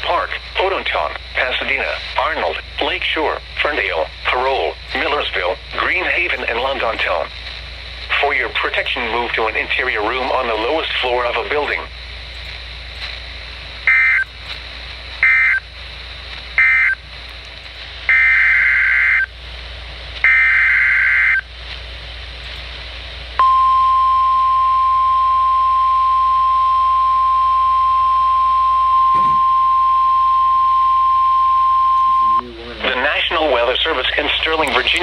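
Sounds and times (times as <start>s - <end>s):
steady loud alarm tone: 13.8s - 14.3s, 15.2s - 15.6s, 16.6s - 17.0s, 18.1s - 19.3s, 20.2s - 21.5s, 23.4s - 32.5s.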